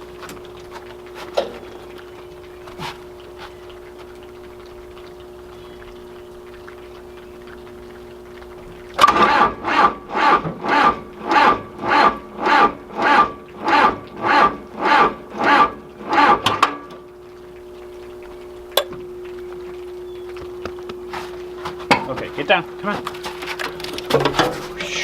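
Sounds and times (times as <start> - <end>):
diesel engine cranking on starter: 9.0 - 16.8.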